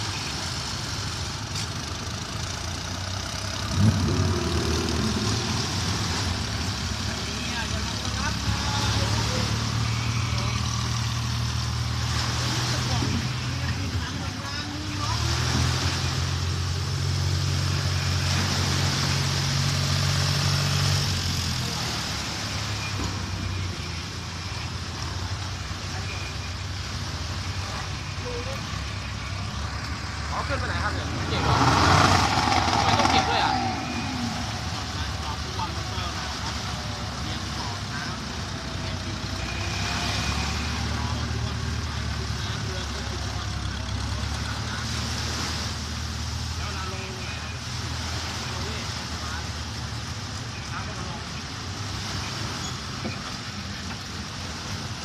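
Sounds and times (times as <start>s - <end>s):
vehicle engine revving: 2.4s - 14.0s, 27.4s - 46.4s.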